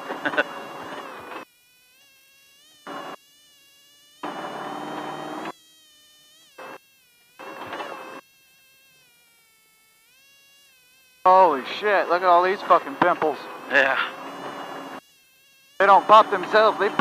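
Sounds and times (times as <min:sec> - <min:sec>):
race car engine whine: 0:04.2 - 0:05.5, 0:07.4 - 0:08.2, 0:11.3 - 0:15.0, 0:15.8 - 0:17.0.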